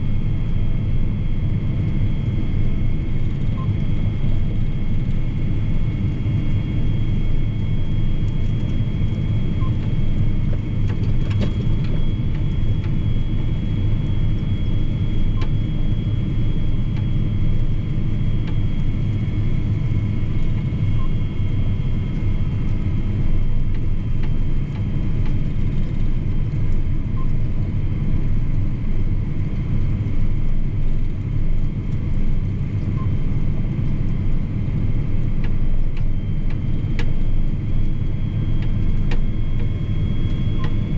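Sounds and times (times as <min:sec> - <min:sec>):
faint high whine: 0:00.0 - 0:28.9, 0:29.6 - 0:40.9
tractor engine rumble from cab: 0:08.4 - 0:21.1.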